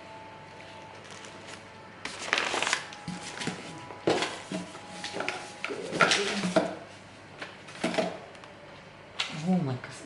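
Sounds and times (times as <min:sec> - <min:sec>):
packaging rustling and crinkling: 0:00.5 - 0:06.6.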